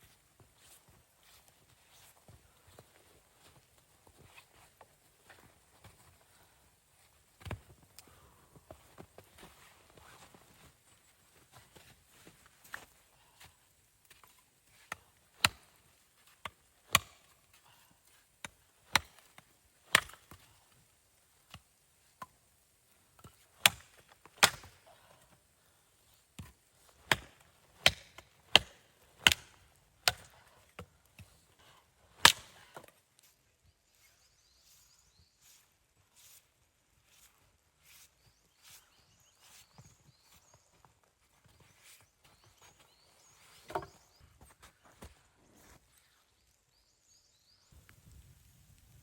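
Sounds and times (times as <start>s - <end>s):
wood being chopped: 14.9s - 15.7s, 16.4s - 17.3s, 18.4s - 20.4s, 23.6s - 24.8s, 26.4s - 31.2s, 32.1s - 32.9s.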